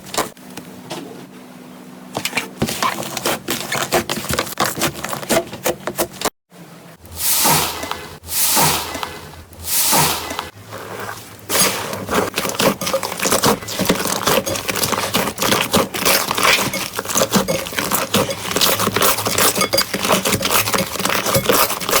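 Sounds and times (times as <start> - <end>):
slime squishing: 2.2 - 6.2, 7.6 - 22.0.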